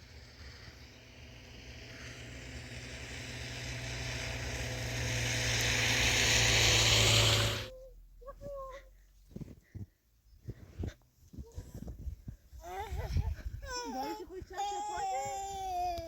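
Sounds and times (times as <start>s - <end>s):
motor humming: 0.0s - 7.7s
rushing noise: 0.0s - 7.7s.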